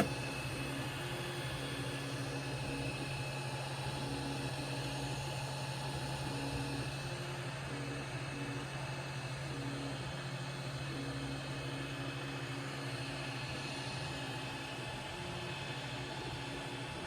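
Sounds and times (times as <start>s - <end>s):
printer low hum: 0.0s - 0.3s.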